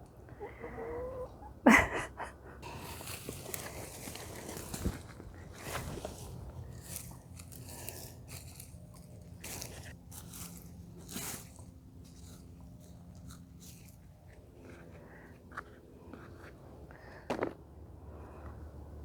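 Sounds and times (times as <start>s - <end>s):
crunching and scraping in soil: 2.6s - 18.6s.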